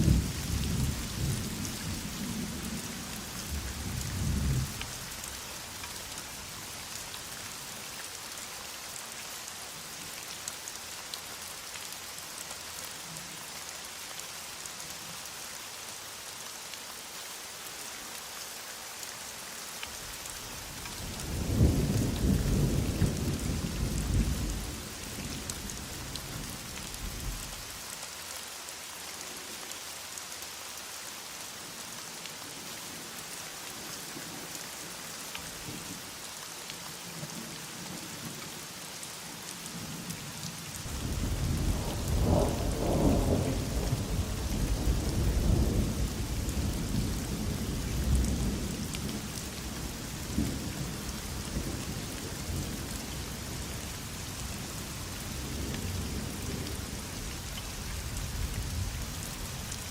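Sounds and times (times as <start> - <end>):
heavy rain falling: 0.0 - 59.9
thunder rumbling: 40.9 - 47.0.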